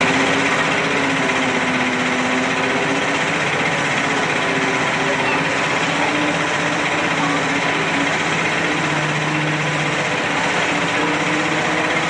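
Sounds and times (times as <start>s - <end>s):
ride motor drone: 0.0s - 12.0s.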